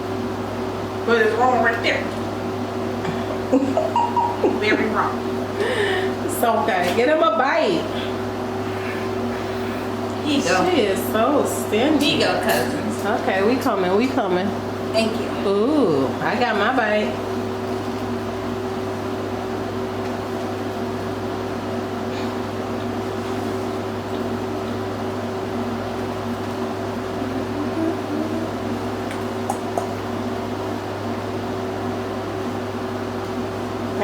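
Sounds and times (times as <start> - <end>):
mechanical hum: 0.0 - 34.0.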